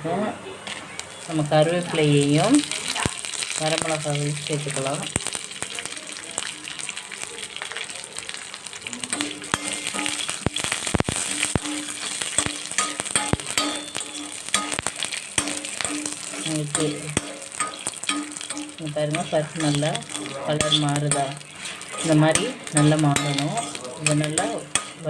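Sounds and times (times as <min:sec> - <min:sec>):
lentils sizzling in oil: 0:00.0 - 0:25.0
spatula scraping a pan: 0:09.1 - 0:25.0.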